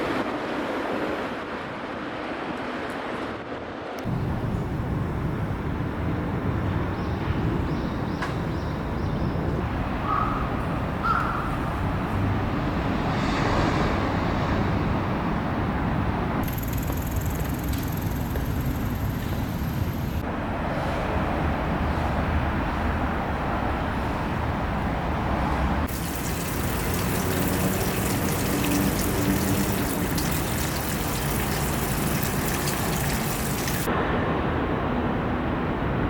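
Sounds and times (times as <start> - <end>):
city traffic rumble: 3.8 - 36.0
thin high whine: 16.4 - 20.2.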